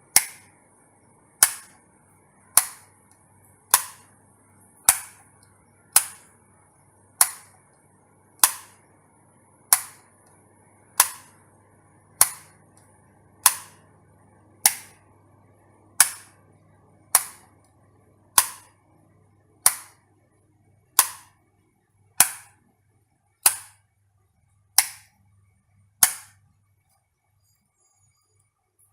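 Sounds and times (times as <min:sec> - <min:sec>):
faint low hum: 0:00.0 - 0:28.9
light switch clicking: 0:16.0 - 0:16.3, 0:21.0 - 0:21.3, 0:26.0 - 0:26.4.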